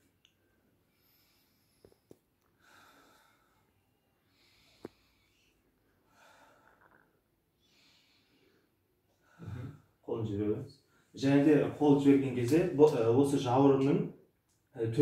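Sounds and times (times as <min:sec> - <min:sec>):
person breathing deeply: 0:00.8 - 0:07.0.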